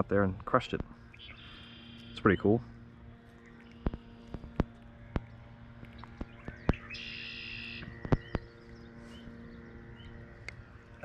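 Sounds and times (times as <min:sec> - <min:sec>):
faint low hum: 0:00.0 - 0:11.0
bird call: 0:01.1 - 0:02.6, 0:06.2 - 0:10.2.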